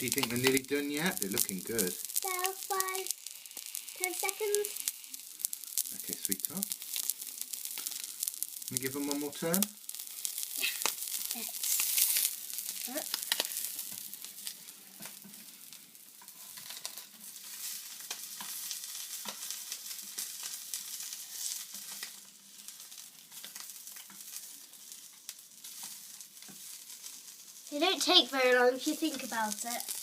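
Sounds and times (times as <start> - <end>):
knocks of food being turned: 0.0 - 17.1
roe sizzling in a pan: 0.0 - 30.0.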